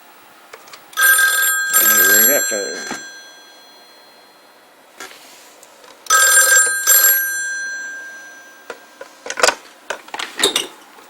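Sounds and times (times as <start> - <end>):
telephone bell ringing: 1.0 - 4.5, 6.1 - 9.2.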